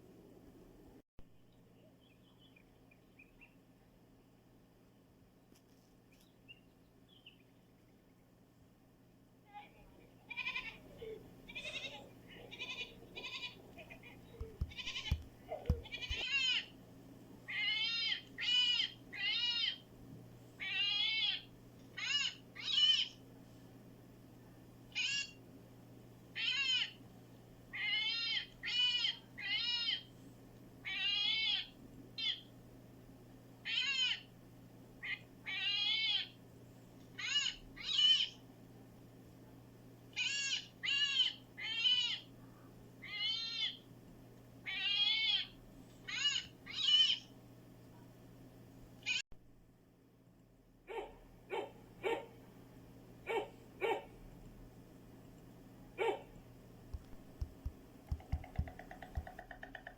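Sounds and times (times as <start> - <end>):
small animal high-pitched cries: 10.2 - 16.7, 17.5 - 19.8, 20.6 - 23.2, 24.9 - 25.4, 26.4 - 27.0, 27.7 - 30.1, 30.8 - 32.5, 33.6 - 34.3, 35.0 - 36.4, 37.2 - 38.4, 40.1 - 42.3, 43.0 - 43.8, 44.6 - 47.3, 49.0 - 49.2.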